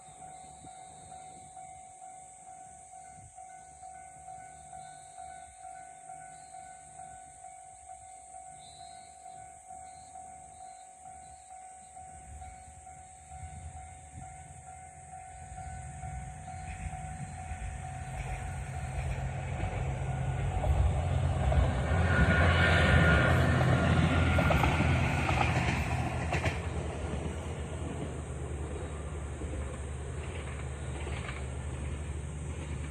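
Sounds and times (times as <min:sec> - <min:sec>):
level crossing warning bell: 0:00.0 - 0:25.0
train passing: 0:00.0 - 0:32.9.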